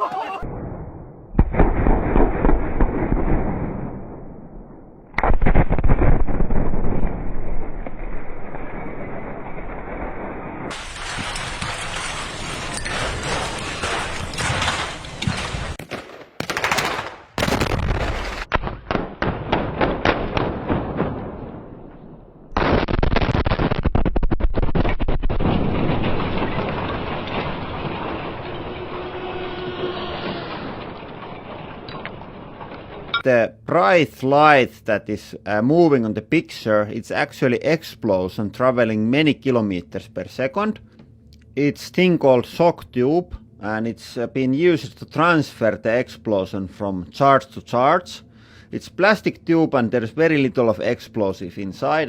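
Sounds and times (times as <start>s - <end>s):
dynamite blast with rumble: 0.4s - 29.4s
explosive charges cracking: 0.4s - 33.2s.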